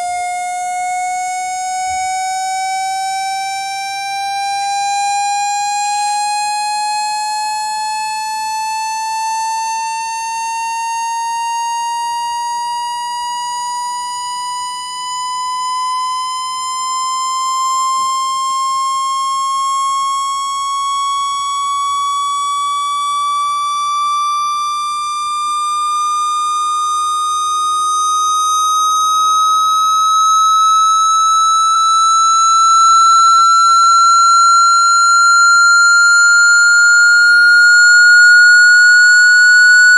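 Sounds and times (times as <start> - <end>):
rising electronic sweep tone: 27.1 - 39.9.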